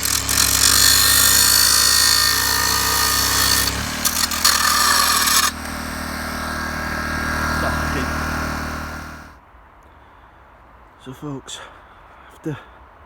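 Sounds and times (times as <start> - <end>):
power tool cutting rasp: 0.0 - 9.4.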